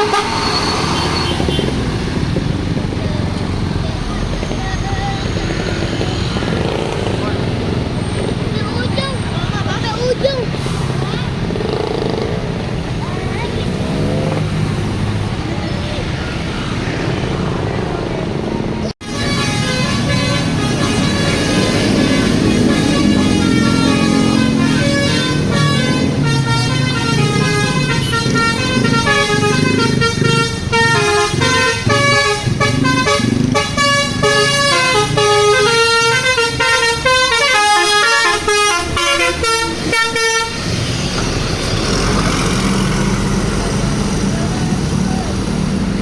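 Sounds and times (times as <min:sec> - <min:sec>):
musical air horn tune: 0:00.0 - 0:01.8, 0:19.0 - 0:40.8
bus engine idling: 0:00.0 - 0:46.0.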